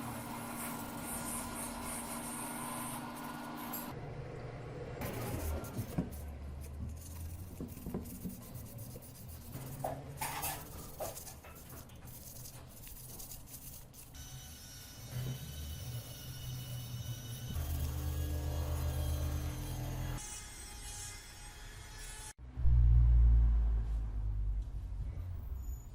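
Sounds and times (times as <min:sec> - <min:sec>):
rubbing and scraping by hand: 0:05.0 - 0:14.2.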